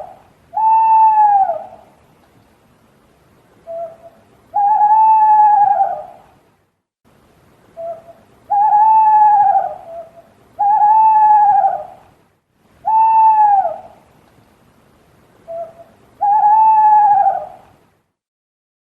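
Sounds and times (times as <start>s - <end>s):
owl hooting: 0.0s - 2.0s, 3.6s - 6.3s, 7.8s - 12.1s, 12.8s - 14.1s, 15.4s - 17.7s.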